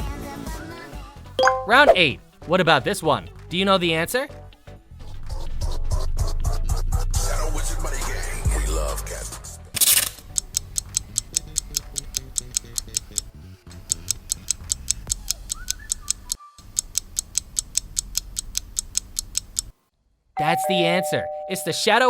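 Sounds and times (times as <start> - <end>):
clock-like ticking: 10.3 - 19.7.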